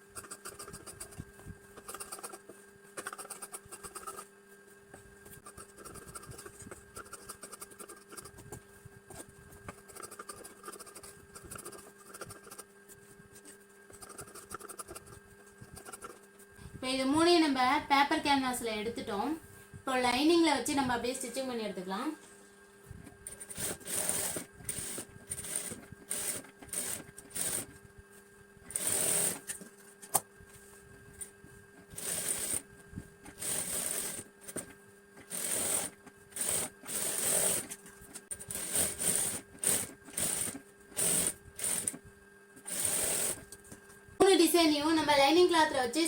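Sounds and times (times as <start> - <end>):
sewing machine stitching: 23.3 - 27.8, 28.7 - 29.6, 31.9 - 32.7, 33.3 - 42.0, 42.6 - 43.5.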